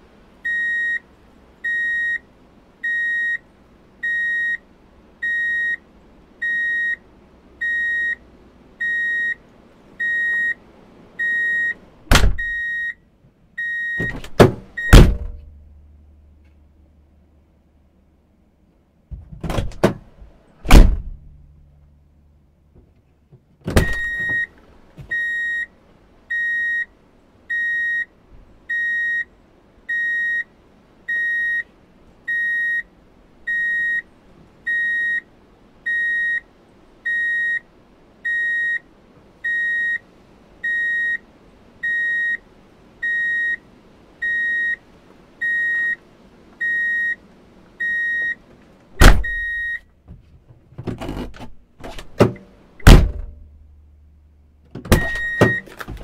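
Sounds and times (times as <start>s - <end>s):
reverse warning beeps: 0.5s - 1.0s, 1.6s - 2.2s, 2.8s - 3.4s, 4.0s - 4.6s, 5.2s - 5.8s, 6.4s - 7.0s, 7.6s - 8.2s, 8.8s - 9.4s, 10.0s - 10.6s, 11.2s - 11.8s, 12.4s - 13.0s, 13.6s - 14.2s, 14.8s - 15.0s, 23.8s - 24.5s, 25.1s - 25.7s, 26.3s - 26.9s, 27.5s - 28.1s, 28.7s - 29.3s, 29.9s - 30.5s, 31.1s - 31.7s, 32.3s - 32.9s, 33.5s - 34.1s, 34.7s - 35.3s, 35.9s - 37.6s, 38.3s - 38.8s, 39.4s - 40.0s, 40.6s - 41.2s, 41.8s - 42.4s, 43.0s - 43.6s, 44.2s - 44.8s, 45.4s - 46.0s, 46.6s - 47.2s, 47.8s - 48.4s, 49.2s - 49.8s, 55.1s - 55.7s
loud knock and clunks: 12.1s - 12.5s, 14.0s - 15.5s, 19.1s - 21.4s, 23.7s - 24.4s, 49.0s - 49.4s, 50.8s - 53.4s, 54.8s - 56.0s.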